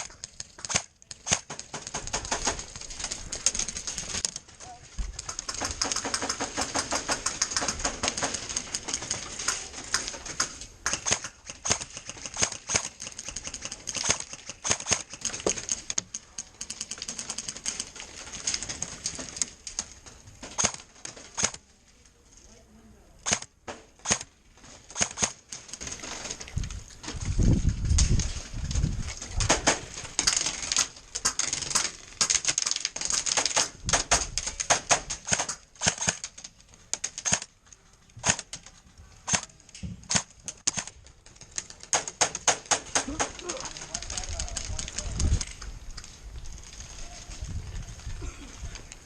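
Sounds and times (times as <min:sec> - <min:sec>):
airsoft guns firing: 0:05.3 - 0:15.9, 0:31.2 - 0:36.2, 0:41.9 - 0:43.5.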